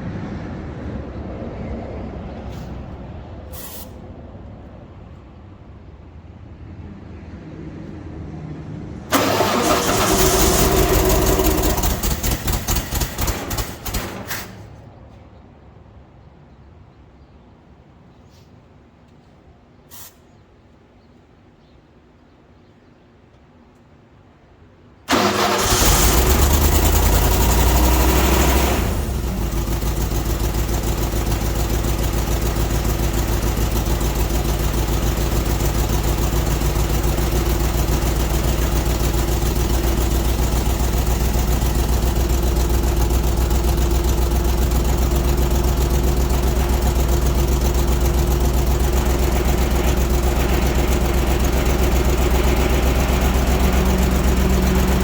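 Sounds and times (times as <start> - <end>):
air compressor engine running: 9.1 - 14.7, 25.1 - 55.0.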